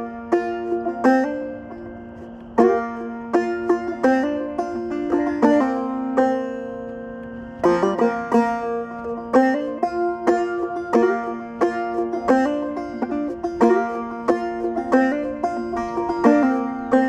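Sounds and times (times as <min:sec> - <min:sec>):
banjo picking: 0:00.0 - 0:17.0.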